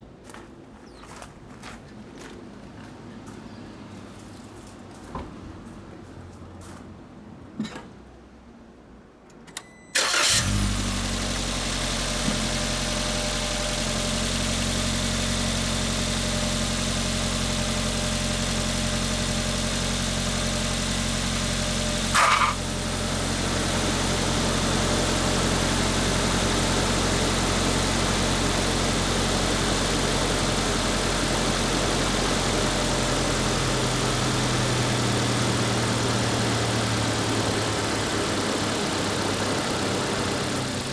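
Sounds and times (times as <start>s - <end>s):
car engine starting and idling: 9.3s - 40.9s.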